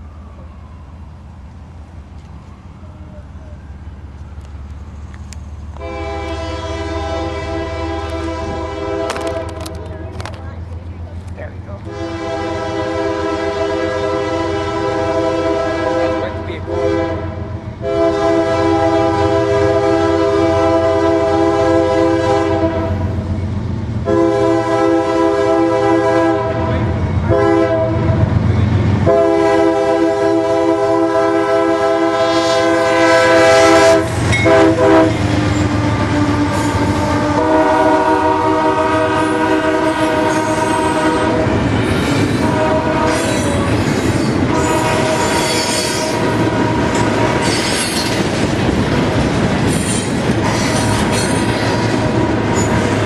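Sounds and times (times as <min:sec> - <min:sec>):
train cars rattling over rails: 0:00.0 - 0:53.0
locomotive air horn: 0:05.8 - 0:09.8, 0:11.8 - 0:23.2, 0:24.0 - 0:28.4, 0:29.0 - 0:41.6, 0:42.3 - 0:48.1
wheel squeal: 0:49.7 - 0:52.0.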